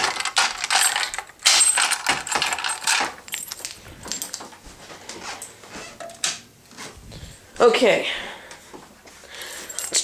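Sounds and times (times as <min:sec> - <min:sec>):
light metallic clinking: 0:00.6 - 0:04.5, 0:09.5 - 0:10.0.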